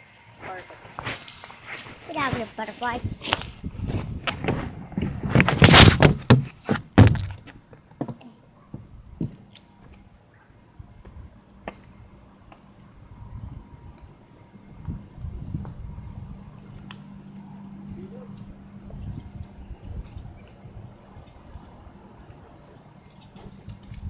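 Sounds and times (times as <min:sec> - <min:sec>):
bird chirping high-pitched: 0:07.5 - 0:14.2, 0:14.8 - 0:16.8, 0:17.4 - 0:18.4, 0:22.6 - 0:24.0.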